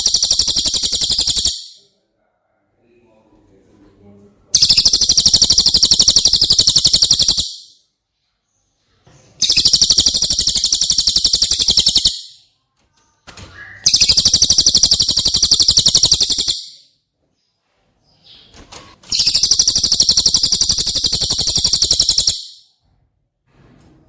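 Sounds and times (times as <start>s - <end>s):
bird high-pitched fast trills: 0.0s - 1.8s, 4.6s - 7.8s, 9.4s - 12.4s, 13.9s - 16.8s, 19.1s - 22.7s.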